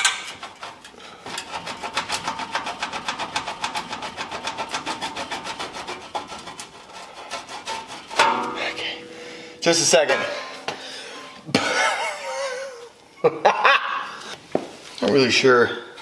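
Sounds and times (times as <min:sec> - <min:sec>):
hand tool rasping on metal: 0:00.0 - 0:09.1.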